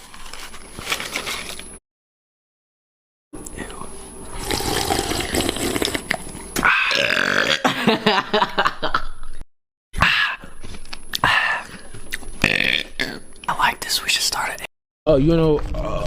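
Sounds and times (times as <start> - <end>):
young man belching: 6.6 - 7.8, 12.4 - 13.2.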